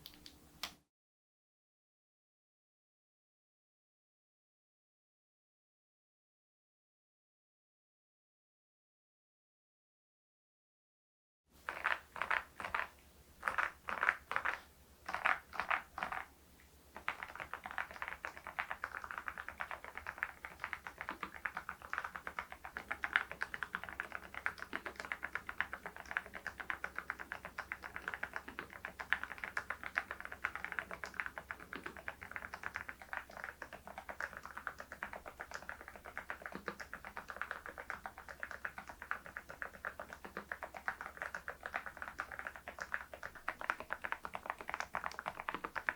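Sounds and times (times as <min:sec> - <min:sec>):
typing on mechanical keyboard: 0:17.0 - 0:45.9.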